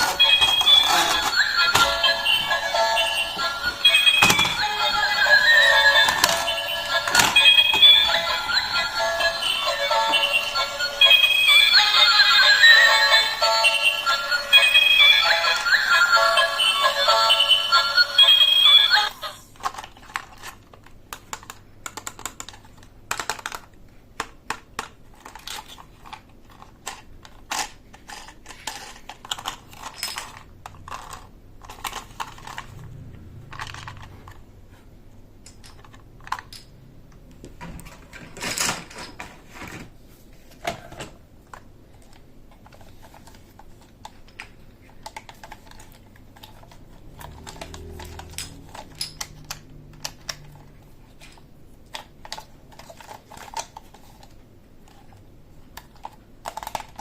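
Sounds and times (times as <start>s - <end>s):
plastic pieces clicking and tapping: 19.6s - 32.8s, 35.4s - 39.3s, 41.0s - 57.0s.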